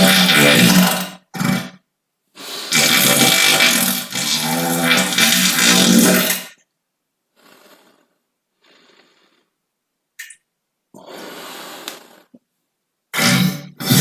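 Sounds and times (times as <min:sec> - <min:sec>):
long buzzing fart: 0:00.0 - 0:01.8, 0:02.7 - 0:06.6, 0:13.1 - 0:14.0.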